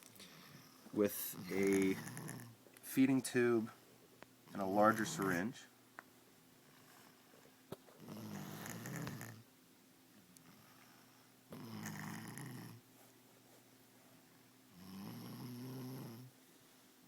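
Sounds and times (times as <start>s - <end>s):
child snore-like breathing: 8.0s - 9.4s.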